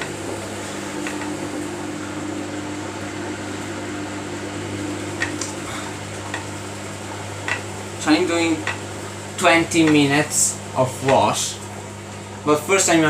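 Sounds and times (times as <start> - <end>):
water inlet valve humming: 0.0 - 13.0
water running in: 0.0 - 13.0.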